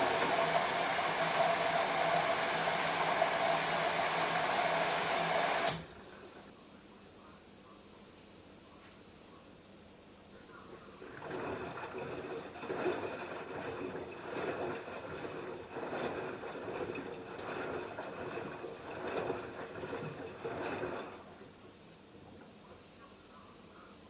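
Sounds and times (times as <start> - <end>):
low motor hum: 0.0 - 6.4, 11.2 - 21.2
laundry sloshing in washing machine: 0.0 - 6.5, 10.8 - 21.6.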